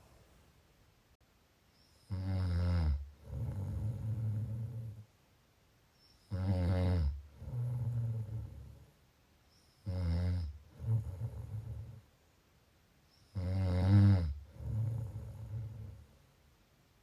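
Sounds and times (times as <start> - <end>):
person snoring: 2.1 - 5.0, 6.3 - 8.8, 9.8 - 12.0, 13.4 - 16.0.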